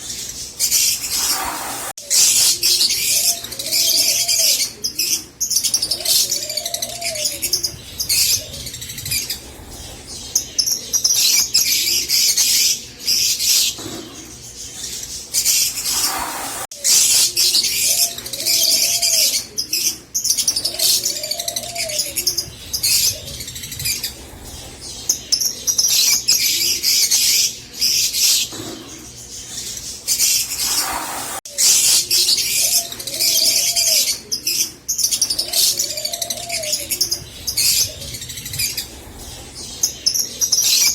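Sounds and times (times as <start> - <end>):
lovebirds chattering and chirping: 0.0 - 40.9.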